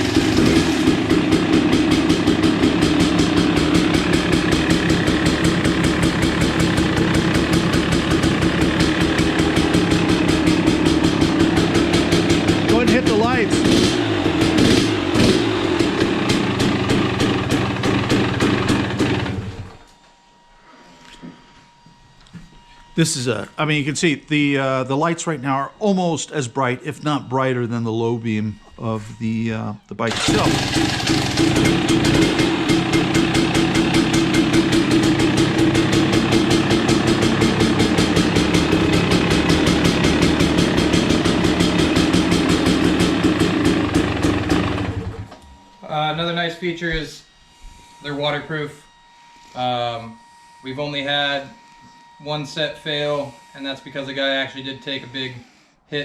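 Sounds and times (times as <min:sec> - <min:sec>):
dirt bike engine idling: 0:00.0 - 0:19.8, 0:28.8 - 0:47.0.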